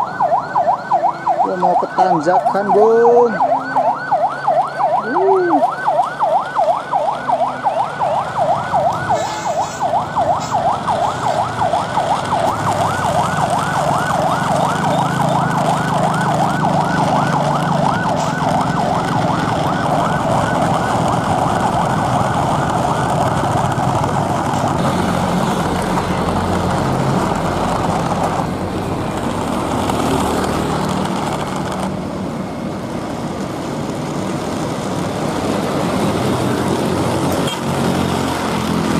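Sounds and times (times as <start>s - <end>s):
fast warbling siren: 0.0s - 26.4s.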